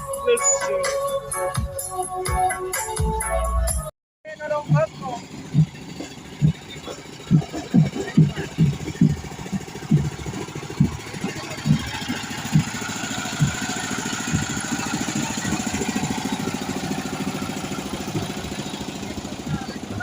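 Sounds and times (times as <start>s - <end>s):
dense low rumble: 4.5s - 20.0s
low kick beat: 6.4s - 16.0s.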